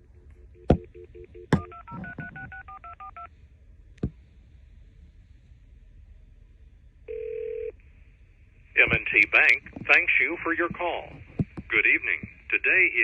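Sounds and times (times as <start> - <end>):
phone clicks: 0.6 - 3.2
touch-tone digits dialing: 0.6 - 3.3.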